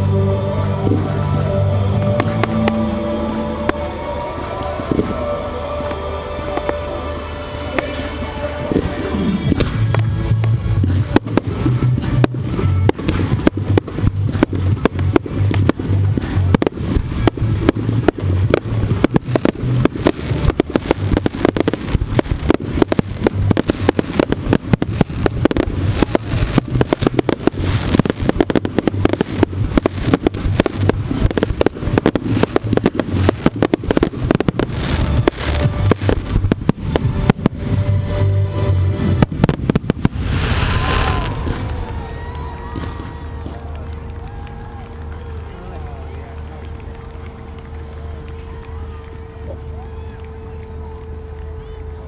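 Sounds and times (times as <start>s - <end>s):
music with heavy bass: 0.0s - 41.7s
fireworks shots and crackling: 7.6s - 44.8s.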